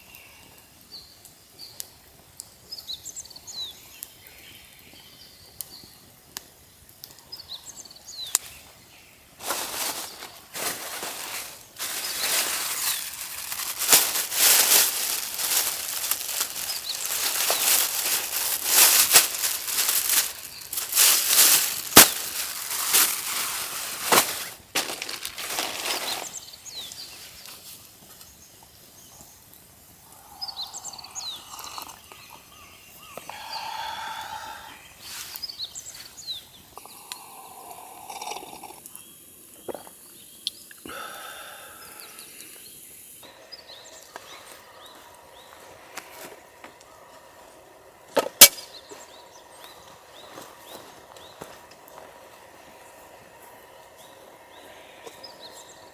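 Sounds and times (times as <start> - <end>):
small birds chirping: 0.0 - 55.9
loud rustling: 9.4 - 26.4.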